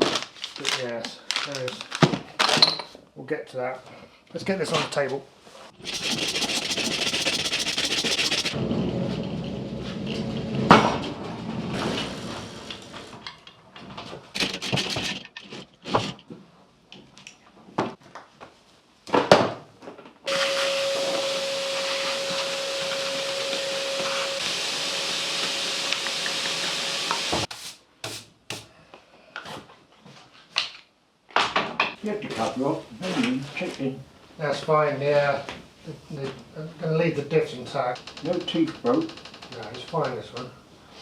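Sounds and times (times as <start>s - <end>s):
metal scraping and shuffling: 14.4s - 16.2s
steady tonal hum: 20.3s - 24.8s.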